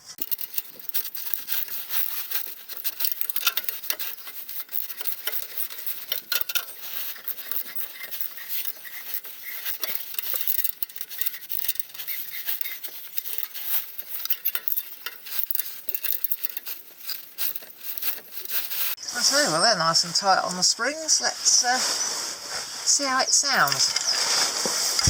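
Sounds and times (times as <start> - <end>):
hand tools clicking on metal: 0.0 - 19.0.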